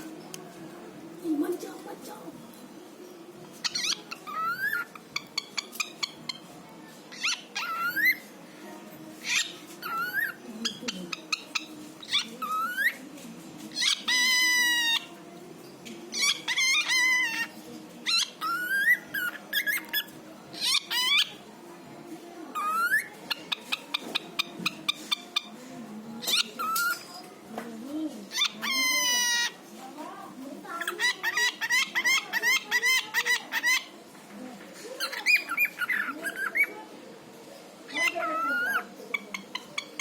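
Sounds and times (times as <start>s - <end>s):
cockatiel whistling and chattering: 3.5s - 6.5s, 7.1s - 8.3s, 9.2s - 13.0s, 13.7s - 15.1s, 16.1s - 21.4s, 22.5s - 25.6s, 26.2s - 27.1s, 28.3s - 29.6s, 30.7s - 33.9s, 35.0s - 36.8s, 37.9s - 40.0s.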